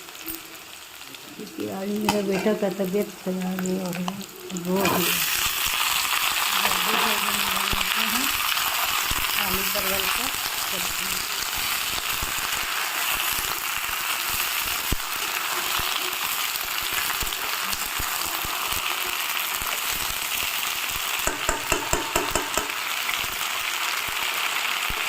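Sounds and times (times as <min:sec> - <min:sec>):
food sizzling in hot oil: 0:00.0 - 0:25.0.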